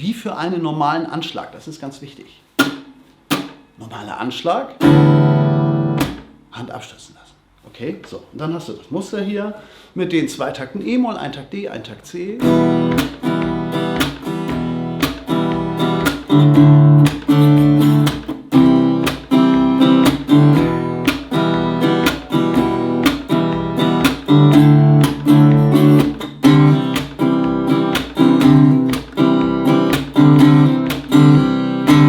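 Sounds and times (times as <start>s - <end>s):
percussive slap on guitar strings: 2.6s - 3.7s, 4.8s - 6.4s, 12.4s - 32.0s
acoustic guitar strumming: 4.8s - 6.5s, 12.4s - 32.0s.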